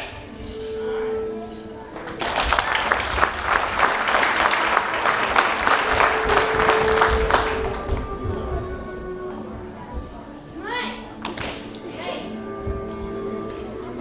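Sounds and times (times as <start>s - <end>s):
quiet music: 0.0s - 14.0s
audience applause: 2.0s - 8.0s.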